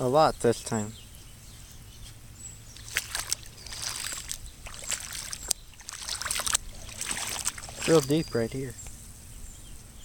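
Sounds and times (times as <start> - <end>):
boots wading through water: 2.7 - 8.6.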